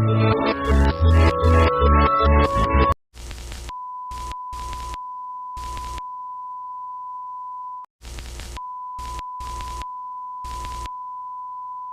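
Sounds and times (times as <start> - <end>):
bursts of harsh static: 3.2 - 5.0, 8.0 - 9.8, 10.4 - 10.9.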